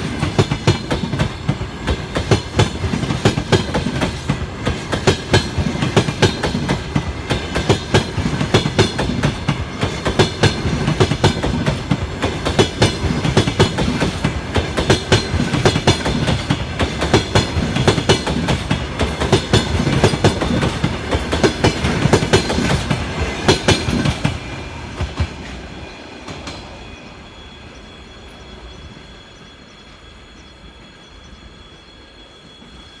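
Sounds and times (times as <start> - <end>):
train wheels clattering over rail joints: 0.0 - 25.6.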